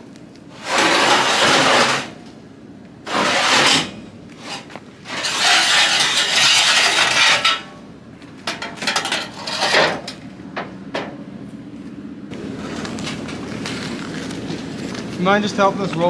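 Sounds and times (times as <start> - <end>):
metal ramp scraping: 0.5 - 2.4, 3.1 - 11.2
metal knocks and clanks: 3.1 - 7.8, 8.4 - 11.2.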